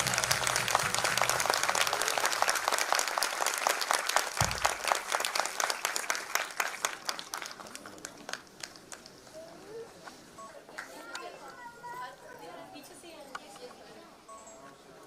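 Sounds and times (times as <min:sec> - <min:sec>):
audience applauding: 0:00.0 - 0:09.2.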